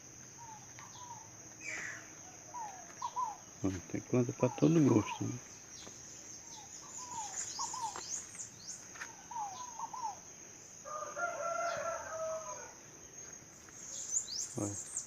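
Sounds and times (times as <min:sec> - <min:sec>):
high insect drone: 0:00.0 - 0:15.0
rooster crowing: 0:10.8 - 0:12.9.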